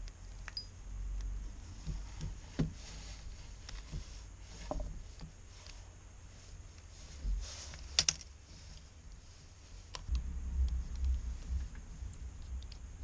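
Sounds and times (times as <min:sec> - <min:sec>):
low handling rumble: 0:10.0 - 0:13.0.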